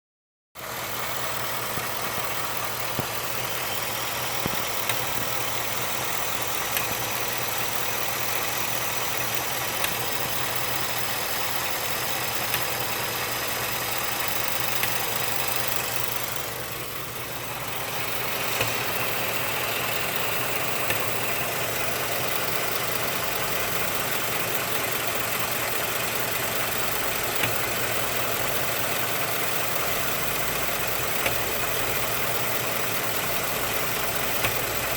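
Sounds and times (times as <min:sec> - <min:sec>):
truck engine idling: 0:00.6 - 0:34.9
sharp clicks from engine: 0:01.7 - 0:13.0, 0:14.2 - 0:16.5, 0:18.0 - 0:23.2, 0:24.0 - 0:34.9.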